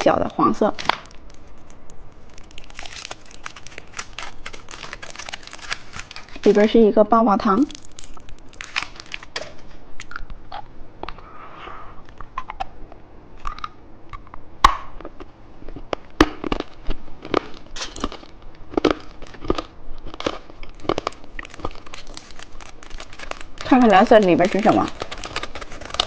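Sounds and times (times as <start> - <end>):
plastic wrapper crinkling: 0.6 - 10.2, 15.9 - 26.0
crunching hard candy: 0.7 - 10.7, 13.4 - 26.0.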